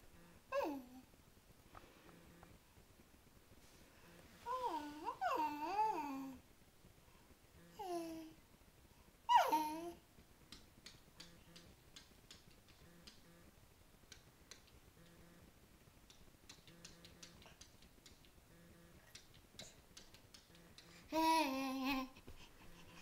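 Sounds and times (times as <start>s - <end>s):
faint ticking and clicking: 10.2s - 21.2s.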